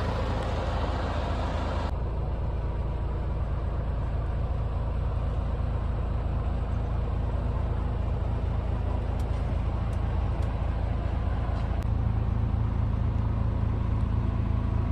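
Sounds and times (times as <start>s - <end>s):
diesel lorry engine idling: 0.0s - 14.9s.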